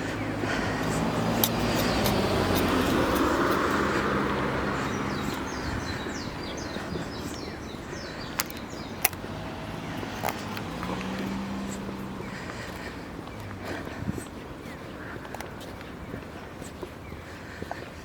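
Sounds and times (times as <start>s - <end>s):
car passing: 0.0s - 18.0s
sharp clicks: 8.3s - 9.3s.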